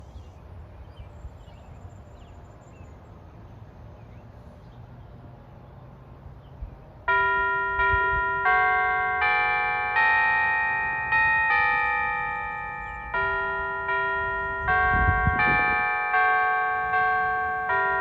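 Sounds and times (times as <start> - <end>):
church bells chiming: 7.1 - 18.0.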